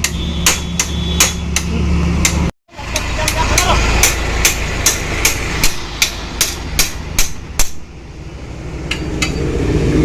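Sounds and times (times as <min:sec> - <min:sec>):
hammer blows on metal: 0:00.0 - 0:07.9.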